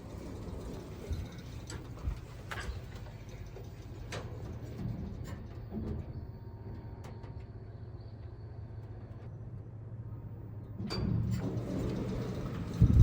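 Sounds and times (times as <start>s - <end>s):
wind and road noise rumble: 12.6s - 13.0s.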